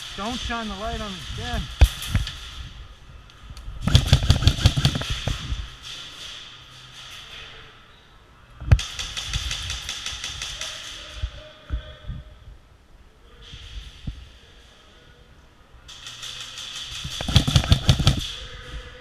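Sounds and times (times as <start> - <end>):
airsoft rifle fire: 3.8 - 5.5, 15.9 - 18.4.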